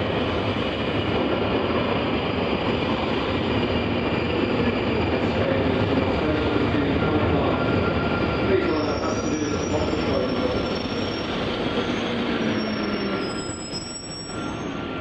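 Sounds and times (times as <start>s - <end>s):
train running noise: 0.0s - 15.0s
high-pitched wheel squeals: 7.0s - 15.0s.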